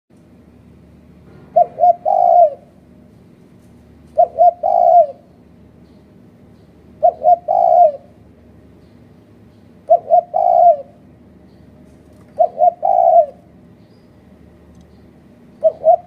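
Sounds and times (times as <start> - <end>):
dove cooing: 1.5 - 2.7, 4.2 - 5.3, 7.0 - 8.2, 9.8 - 11.0, 12.2 - 13.6, 15.6 - 16.0.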